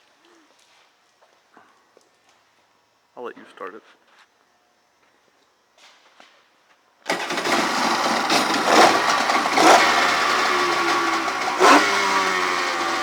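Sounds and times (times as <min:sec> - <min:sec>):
jet ski engine starting: 0:07.1 - 0:13.0.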